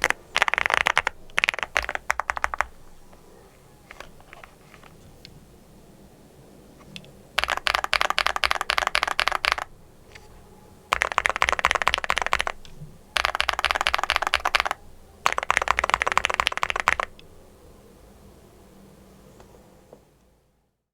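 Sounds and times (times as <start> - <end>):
mechanical keyboard typing: 0.0 - 3.2, 3.9 - 5.0, 6.9 - 9.7, 10.9 - 17.2.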